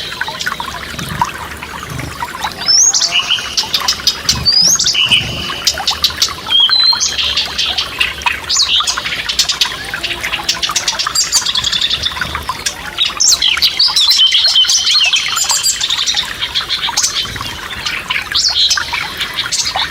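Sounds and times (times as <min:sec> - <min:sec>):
small stream rushing: 0:00.0 - 0:19.9
songbirds singing and chirping: 0:00.1 - 0:19.9.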